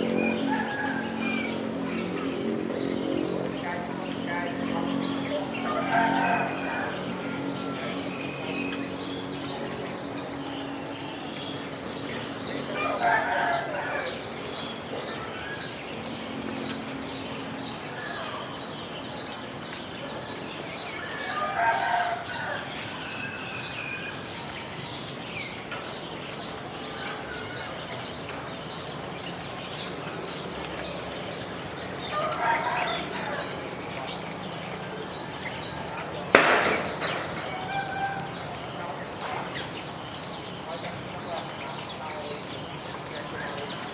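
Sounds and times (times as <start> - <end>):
rooster crowing: 0.0 - 1.9, 5.3 - 8.6, 12.7 - 14.6, 20.9 - 23.8, 32.0 - 33.6, 36.4 - 38.7
constant high-pitched whine: 0.0 - 43.9.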